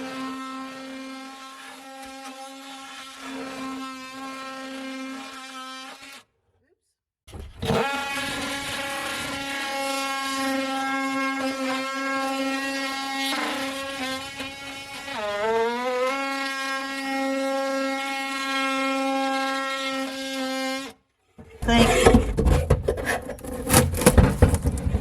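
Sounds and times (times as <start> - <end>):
oscillating multi-tool buzzing: 7.6 - 17.8.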